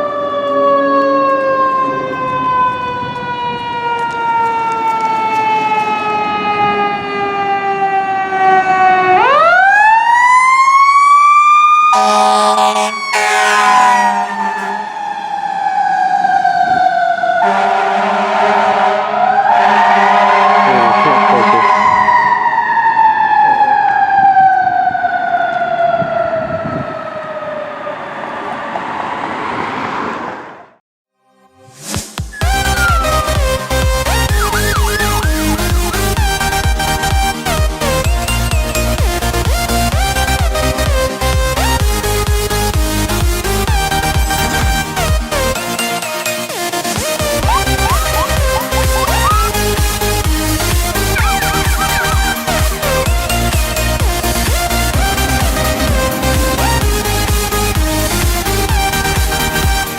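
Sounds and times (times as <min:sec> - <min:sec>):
fire engine siren: 0:00.0 - 0:30.0, 0:32.4 - 0:59.9
air horn blasts: 0:11.9 - 0:15.6, 0:17.4 - 0:21.9.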